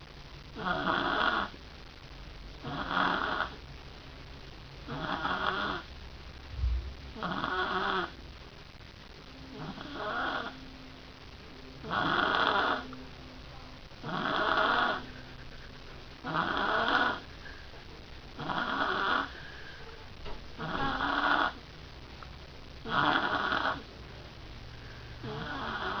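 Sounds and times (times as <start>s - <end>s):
person snoring: 2.6s - 3.6s, 7.2s - 8.2s, 9.5s - 10.6s, 11.8s - 12.9s, 14.0s - 15.2s, 16.2s - 17.3s, 18.4s - 19.5s, 22.8s - 23.8s, 25.2s - 26.0s.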